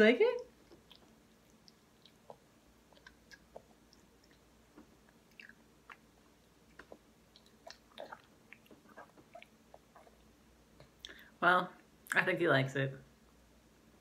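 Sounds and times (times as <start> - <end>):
baby chewing with wet smacks: 0.5 - 11.2.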